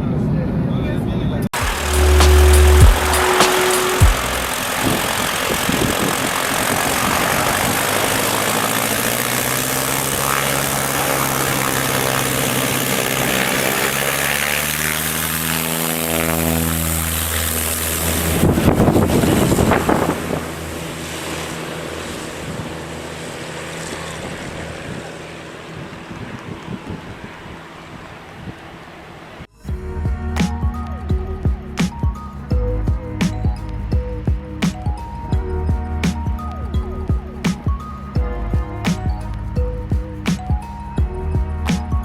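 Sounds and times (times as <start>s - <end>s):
aircraft passing low: 1.6s - 29.5s.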